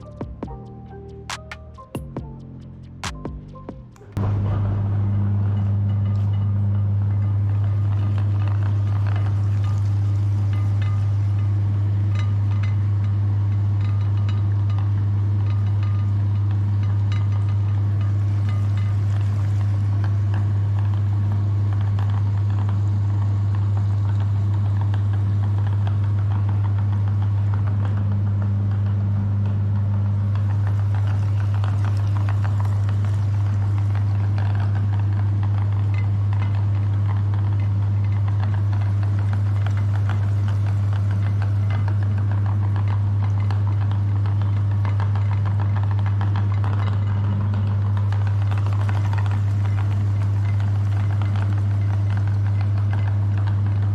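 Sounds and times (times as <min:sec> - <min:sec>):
electric meat grinder motor hum: 0:30.0 - 0:53.9.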